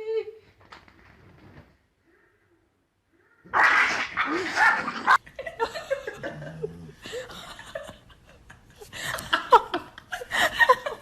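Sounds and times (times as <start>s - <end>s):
people laughing: 5.2s - 11.0s.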